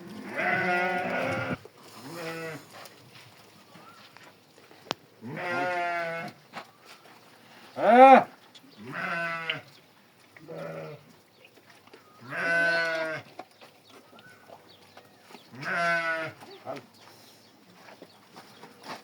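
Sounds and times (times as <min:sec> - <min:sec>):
goat bleating: 0:00.1 - 0:02.7, 0:05.2 - 0:06.4, 0:08.8 - 0:09.6, 0:10.4 - 0:11.0, 0:12.2 - 0:13.2, 0:15.6 - 0:16.4.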